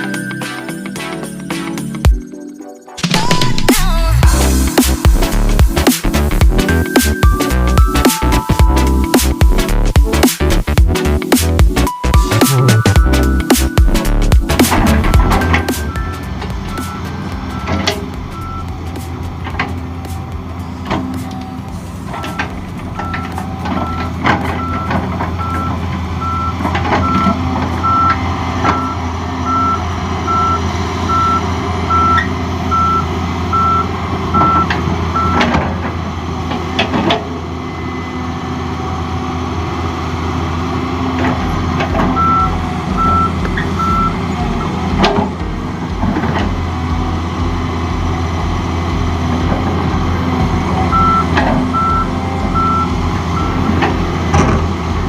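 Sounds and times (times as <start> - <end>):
excavator diesel engine running: 3.1 - 55.0
warning alarm beeping: 12.0 - 18.8, 22.2 - 35.5, 42.1 - 44.8, 50.9 - 54.1.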